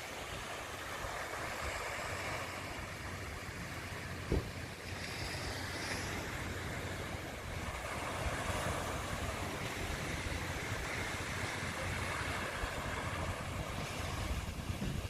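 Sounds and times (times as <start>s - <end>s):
surf: 0.0s - 15.0s
wind on microphone: 4.2s - 15.0s
short thump: 4.3s - 4.5s.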